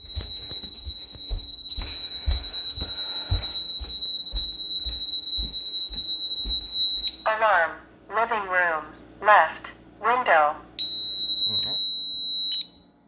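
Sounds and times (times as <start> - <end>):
high-pitched alarm tone: 0.0 - 7.3, 10.8 - 12.8.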